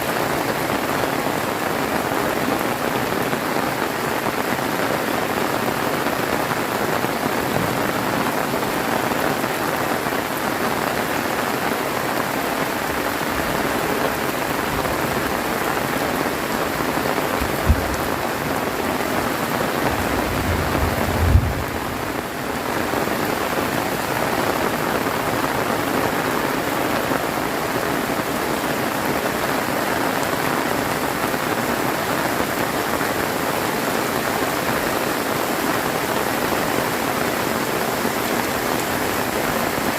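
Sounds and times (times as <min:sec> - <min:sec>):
heavy rain pouring: 0:00.0 - 0:39.9
low thumps: 0:17.3 - 0:22.1.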